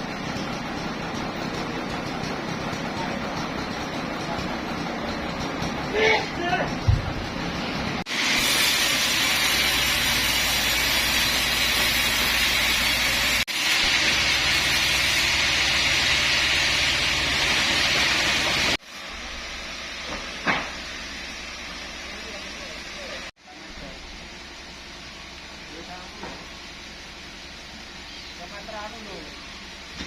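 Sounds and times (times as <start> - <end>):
sawmill machinery hiss: 7.5 - 30.0.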